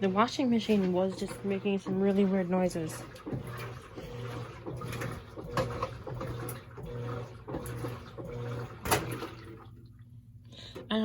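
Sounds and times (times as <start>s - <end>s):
water sloshing: 0.0s - 10.2s
washing machine motor hum: 0.0s - 11.0s.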